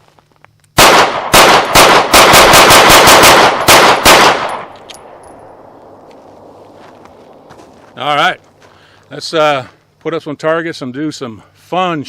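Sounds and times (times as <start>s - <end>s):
gunshot echo: 0.8s - 5.7s
pistol shots: 0.8s - 6.5s.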